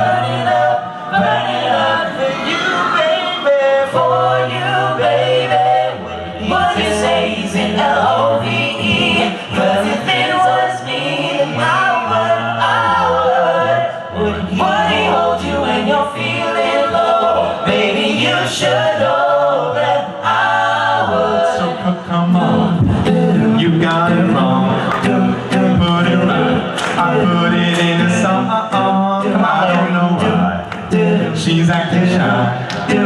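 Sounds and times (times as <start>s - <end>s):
male a cappella group singing: 0.0s - 33.0s
sung bass line: 22.4s - 33.0s.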